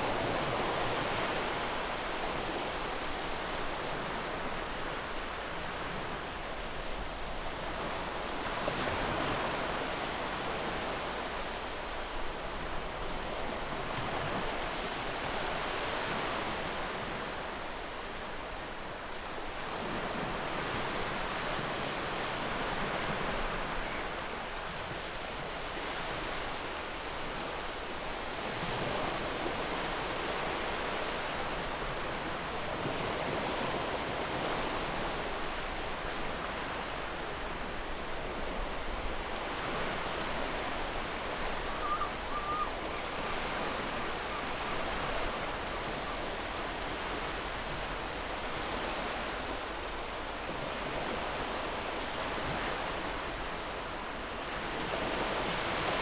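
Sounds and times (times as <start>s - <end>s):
ocean waves: 39.3s - 56.0s.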